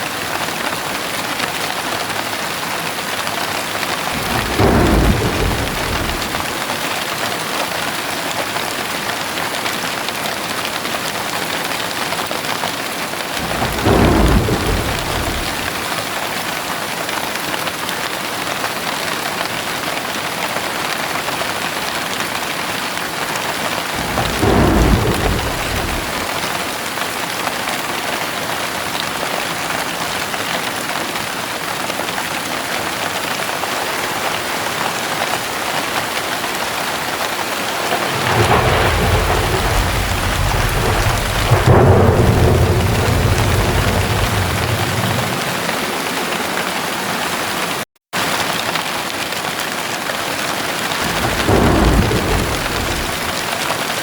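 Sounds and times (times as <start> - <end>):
steady rain falling: 0.0 - 54.0
thunder rumbling: 3.9 - 7.2, 13.4 - 16.3, 23.6 - 26.8, 37.2 - 47.0, 51.0 - 54.0.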